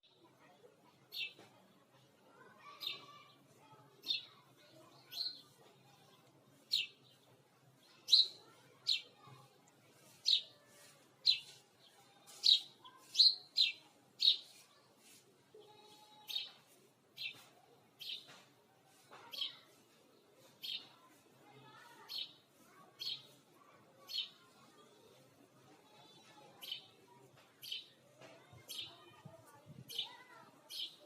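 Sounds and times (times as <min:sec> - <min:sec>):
sparrow chirping: 0:06.6 - 0:07.3, 0:08.1 - 0:09.3, 0:10.0 - 0:11.6, 0:12.3 - 0:14.6, 0:18.0 - 0:18.3, 0:20.6 - 0:20.9, 0:23.0 - 0:23.4, 0:26.6 - 0:26.9, 0:27.6 - 0:28.0.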